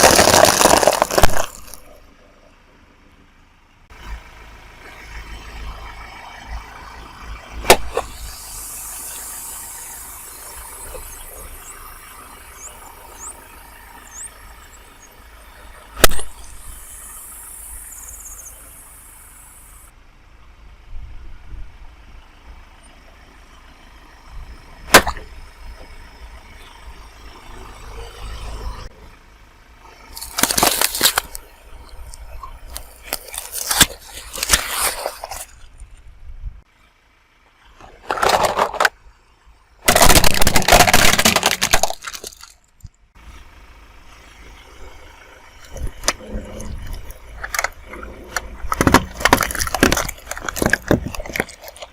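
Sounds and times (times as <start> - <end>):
tyre crushing objects with pops: 0.0 - 1.9, 24.9 - 25.2, 30.2 - 31.4, 39.9 - 42.5, 48.7 - 51.9
tyre crunching objects: 0.0 - 2.0, 24.9 - 25.2, 30.1 - 36.0, 39.9 - 42.8, 45.6 - 51.9
low vehicle rumble: 0.0 - 51.9.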